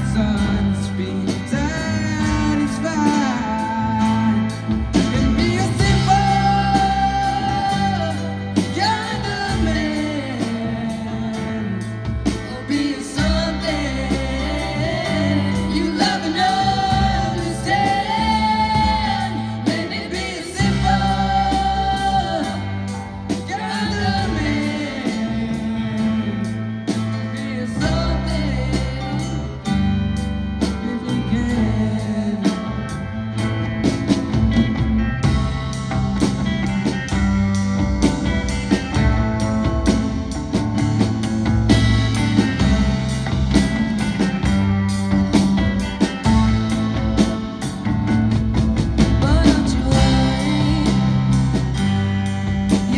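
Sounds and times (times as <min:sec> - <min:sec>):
person singing: 0:00.0 - 0:33.6, 0:45.6 - 0:52.9
guitar: 0:00.0 - 0:52.9
sustained bass notes: 0:00.0 - 0:52.9.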